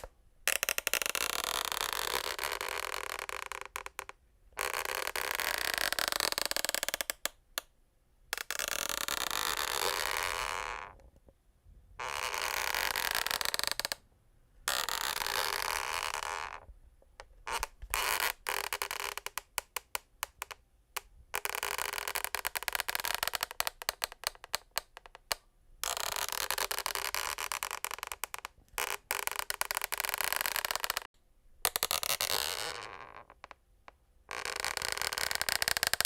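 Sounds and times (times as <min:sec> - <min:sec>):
wooden floor creaking and scraping: 0:12.0 - 0:14.0.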